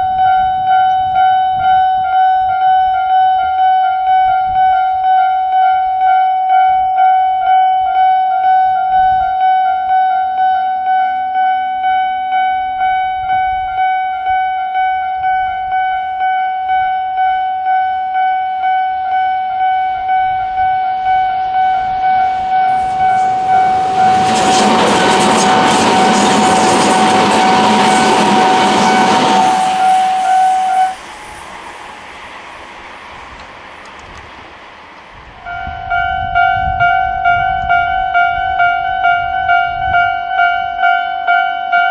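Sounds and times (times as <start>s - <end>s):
level crossing alarm ding: 0.0s - 26.2s
train rushing past: 17.2s - 41.9s.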